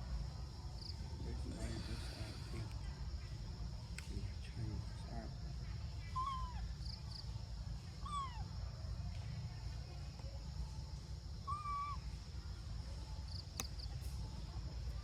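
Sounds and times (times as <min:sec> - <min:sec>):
faint high chirps: 0:04.2 - 0:15.0
monkey coo calls: 0:06.1 - 0:06.7, 0:08.0 - 0:08.5, 0:11.4 - 0:12.0.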